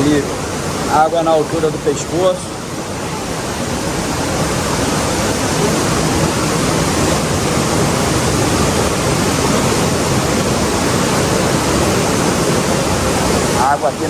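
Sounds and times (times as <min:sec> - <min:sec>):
waterfall and rapids rushing: 0:00.0 - 0:14.0.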